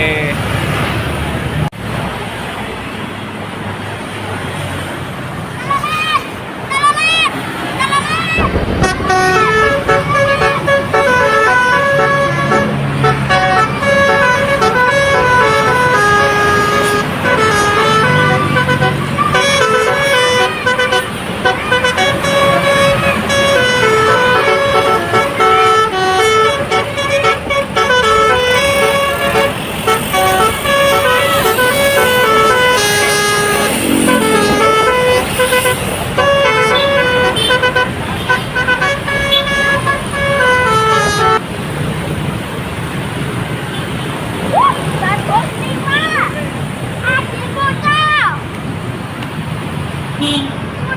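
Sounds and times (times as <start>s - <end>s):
multi-tone musical air horn: 8.7s - 41.4s.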